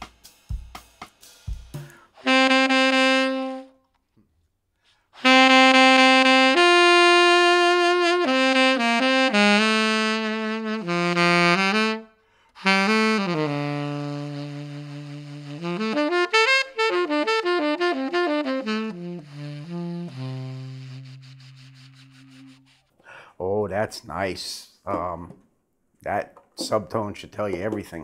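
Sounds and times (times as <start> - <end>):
tenor saxophone solo: 2.1 - 4.0, 5.2 - 22.8.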